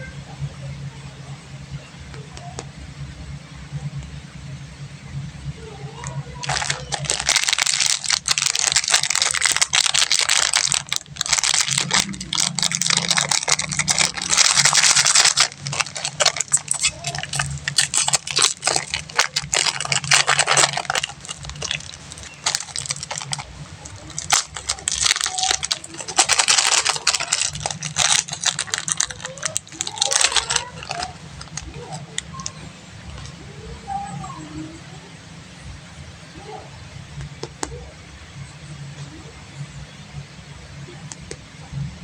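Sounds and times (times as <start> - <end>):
plastic wrappers crinkling: 6.0 - 33.4.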